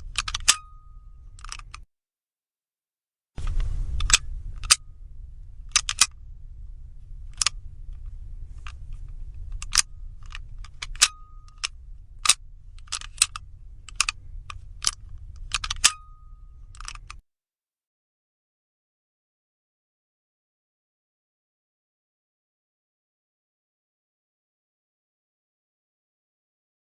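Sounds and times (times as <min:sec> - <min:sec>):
low steady hum: 0:00.0 - 0:01.8, 0:03.4 - 0:17.2
metallic door lock clicks: 0:00.0 - 0:01.8, 0:04.0 - 0:04.8, 0:05.7 - 0:06.2, 0:09.4 - 0:17.2.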